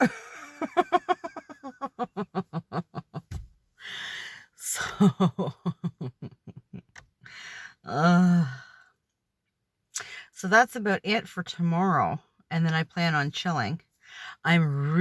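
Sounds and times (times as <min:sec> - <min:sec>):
woman laughing: 0:00.0 - 0:07.0
breathy intake of breath: 0:03.8 - 0:04.5.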